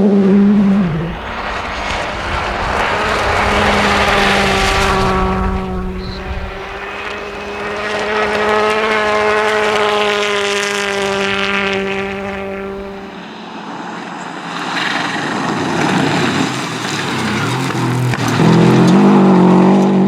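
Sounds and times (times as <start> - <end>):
noisy hiss: 0.6 - 13.1
rally car engine at high revs: 0.6 - 13.1, 15.6 - 20.0.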